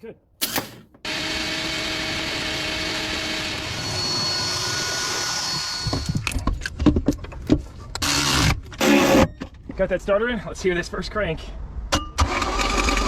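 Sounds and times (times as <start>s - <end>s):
small electric motor whirring: 1.0s - 6.3s, 8.0s - 9.3s.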